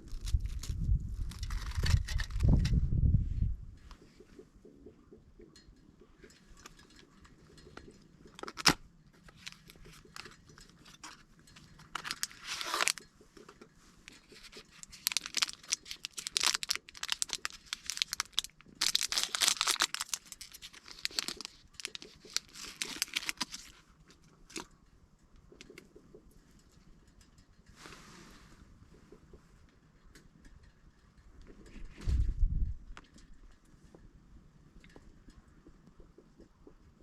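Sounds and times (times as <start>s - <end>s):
material rustling and crinkling: 0.0s - 2.8s, 7.7s - 24.7s.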